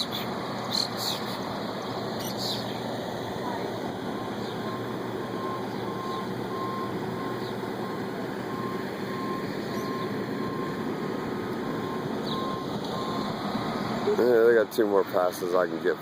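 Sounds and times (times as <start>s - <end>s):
machinery and trucks running: 0.0s - 16.0s
vehicle backup alarm beeping: 3.9s - 14.2s.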